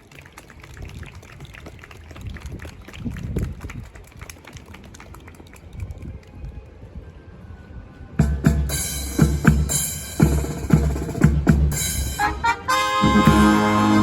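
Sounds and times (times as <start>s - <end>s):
faint outdoor background noise: 0.0s - 14.0s
bass and snare drum marching groove: 8.2s - 14.0s.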